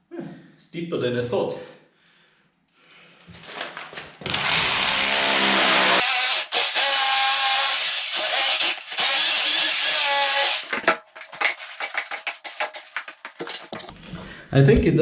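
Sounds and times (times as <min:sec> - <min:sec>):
angle grinder cutting steel: 0:04.3 - 0:13.9.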